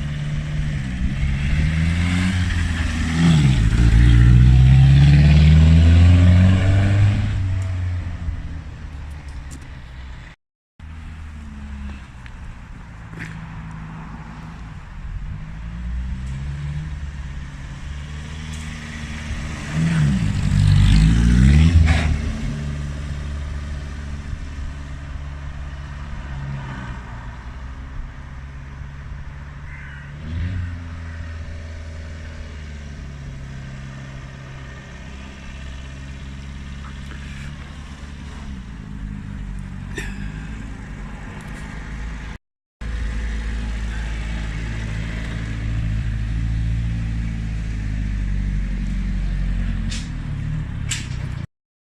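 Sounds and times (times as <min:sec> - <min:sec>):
car engine revving: 0:00.0 - 0:08.4.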